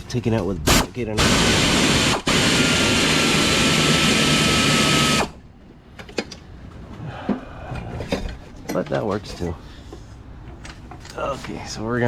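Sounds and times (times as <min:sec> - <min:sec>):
power tool motor whining: 0:01.2 - 0:05.4.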